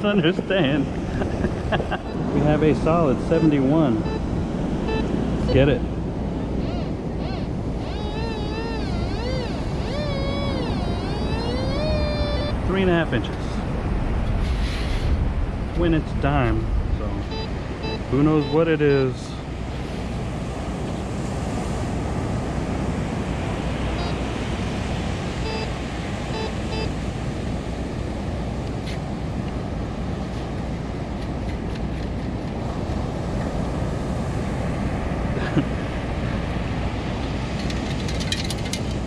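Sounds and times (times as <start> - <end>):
surf: 0.0 - 31.8
wind on microphone: 0.0 - 39.0
metal detector beeps: 3.1 - 5.7, 6.6 - 12.8, 17.2 - 19.3, 23.9 - 24.3, 25.4 - 27.0.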